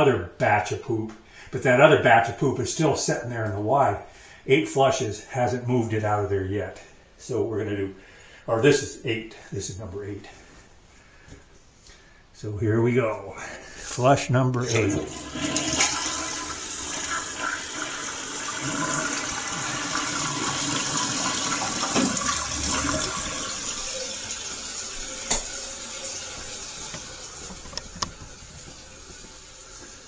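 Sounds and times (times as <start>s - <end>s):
toilet flushing: 14.6s - 30.0s.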